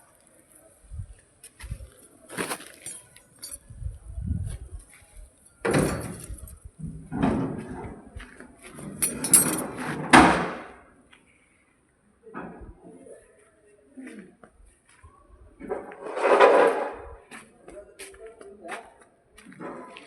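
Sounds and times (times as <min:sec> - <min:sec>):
scraping clatters: 0:08.8 - 0:10.0.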